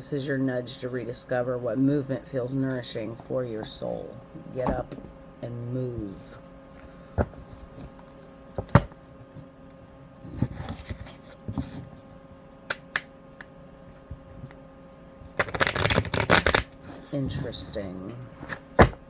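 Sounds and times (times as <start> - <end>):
cards tapping and clicking: 8.6 - 9.4, 12.7 - 14.6, 15.4 - 16.7
cards being shuffled: 10.3 - 11.9, 15.3 - 17.6.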